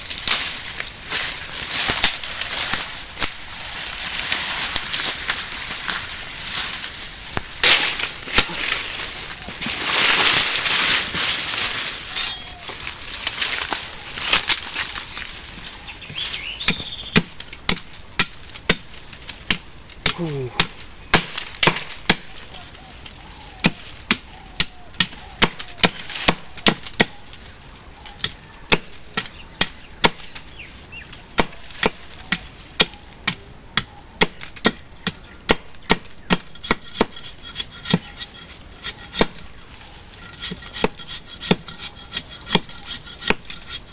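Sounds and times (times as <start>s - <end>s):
chopping strikes into wood: 19.5s - 22.3s.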